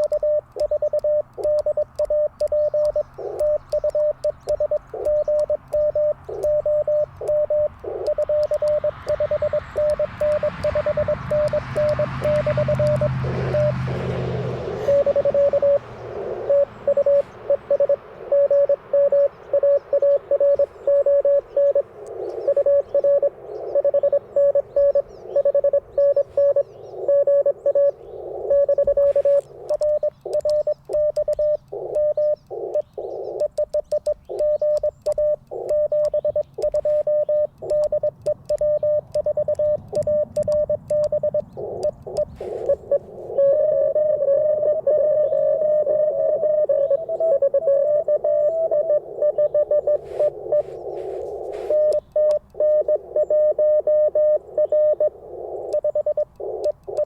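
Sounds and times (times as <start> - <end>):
light clicks: 0.0 - 13.7, 28.9 - 42.8
radio receiver hiss: 0.0 - 27.6, 28.2 - 43.5, 49.0 - 53.3
morse code tone keyed on and off: 0.0 - 57.0.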